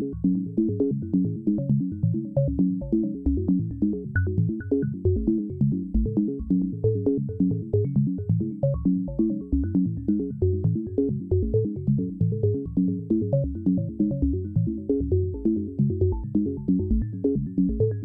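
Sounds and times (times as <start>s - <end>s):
synthesizer sequenced low notes: 0.0s - 18.0s.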